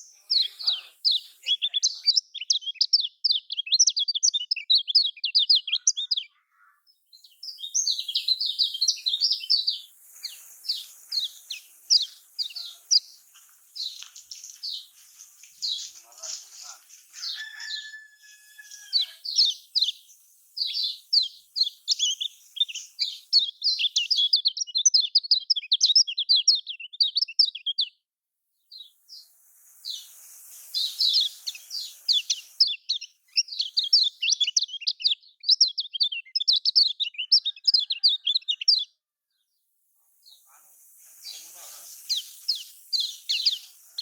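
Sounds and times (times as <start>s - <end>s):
bird chattering song: 0.0s - 28.0s, 28.8s - 39.0s, 40.2s - 44.0s.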